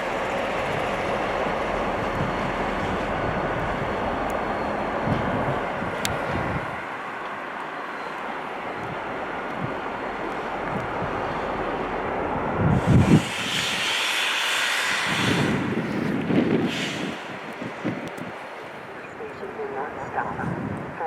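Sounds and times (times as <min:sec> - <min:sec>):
wind buffeting microphone: 0:00.0 - 0:07.6, 0:08.6 - 0:21.0
train rushing past: 0:00.0 - 0:21.0
high hiss: 0:12.8 - 0:15.7.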